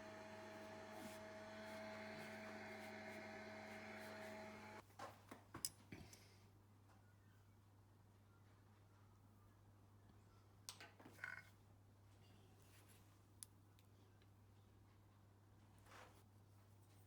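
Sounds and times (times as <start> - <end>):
wood lathe motor humming: 0.0 - 4.8.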